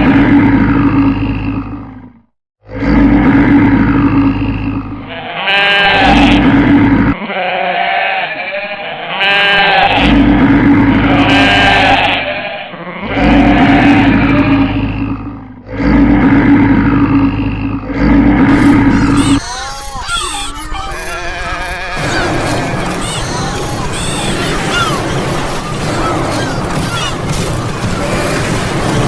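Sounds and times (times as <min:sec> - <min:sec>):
animal calls and bleats: 0:04.0 - 0:06.5, 0:07.1 - 0:10.2, 0:10.8 - 0:16.0, 0:17.0 - 0:29.0.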